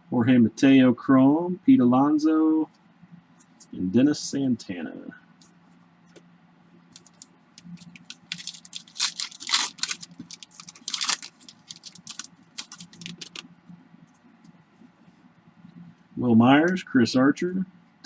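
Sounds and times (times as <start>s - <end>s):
plastic wrapper tearing and crinkling: 6.9s - 13.5s.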